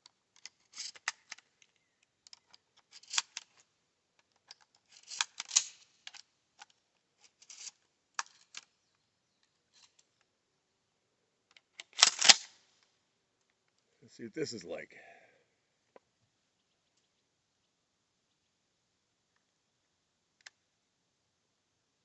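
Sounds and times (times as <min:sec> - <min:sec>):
shotgun metallic clicks: 0:04.2 - 0:06.8, 0:11.5 - 0:12.6.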